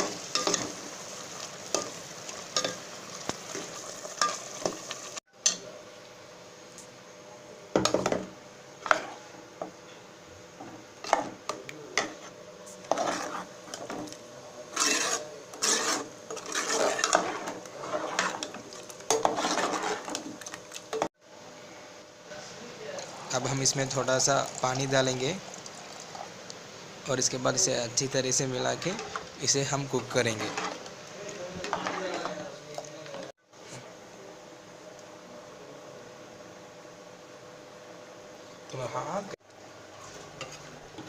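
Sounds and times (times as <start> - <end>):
spoon scraping a pan: 0.0 - 1.0, 3.5 - 5.0, 12.0 - 14.1, 14.7 - 20.4, 28.7 - 29.3, 30.3 - 30.9, 31.6 - 32.5, 40.0 - 41.0
food sizzling: 0.0 - 5.3, 11.0 - 21.2, 22.8 - 33.3.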